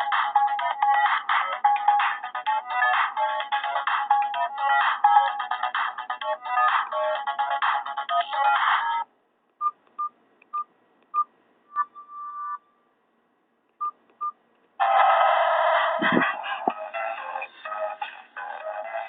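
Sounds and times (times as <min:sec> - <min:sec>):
mobile phone ringtone: 0:11.7 - 0:12.7.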